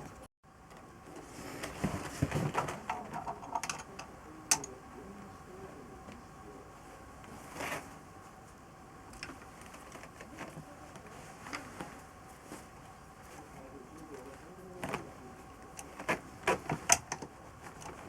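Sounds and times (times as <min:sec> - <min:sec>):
metal parts clicking and tapping: 0:03.2 - 0:04.6
scraping rustle: 0:07.3 - 0:08.0.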